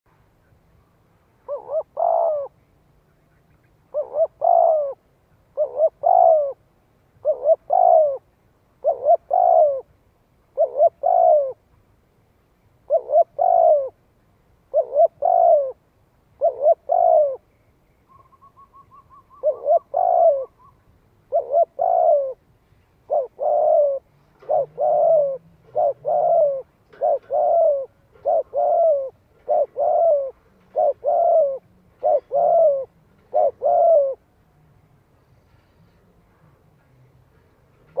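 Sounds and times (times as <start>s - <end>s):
dove cooing: 1.4s - 2.6s, 3.9s - 9.9s, 10.5s - 11.6s, 12.8s - 14.0s, 14.6s - 17.5s, 18.1s - 34.3s.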